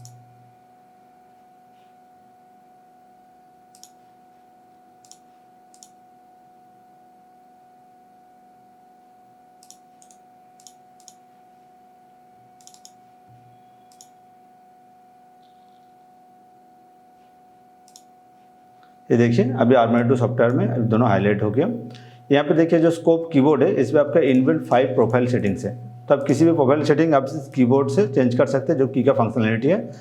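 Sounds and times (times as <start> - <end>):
computer mouse clicks: 0.0 - 0.2, 3.7 - 4.1, 5.0 - 6.0, 9.6 - 11.2, 12.6 - 13.0, 13.7 - 14.2, 17.8 - 18.1
faint hum: 0.0 - 30.0.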